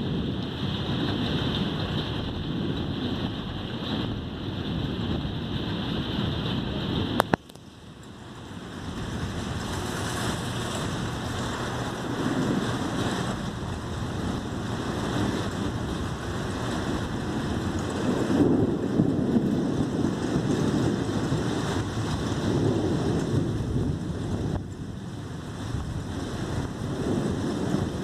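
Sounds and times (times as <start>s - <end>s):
low rumbling: 0.0s - 28.0s
wind buffeting microphone: 0.0s - 28.0s.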